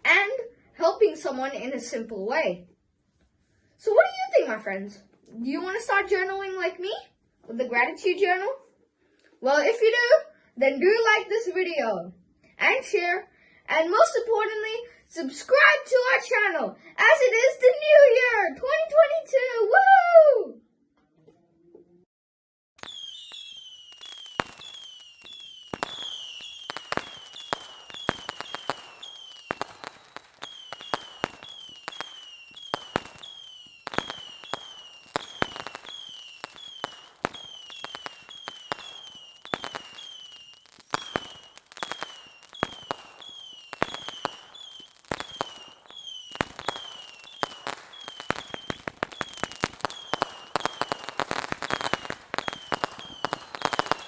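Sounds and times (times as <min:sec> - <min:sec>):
fireworks cracking and popping: 0:22.8 - 0:54.0
fireworks falling whistles: 0:22.8 - 0:54.0.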